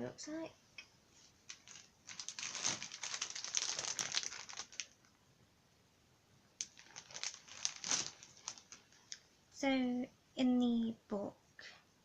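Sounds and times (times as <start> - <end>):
packaging bag crinkling: 1.4 - 5.1, 6.6 - 9.2.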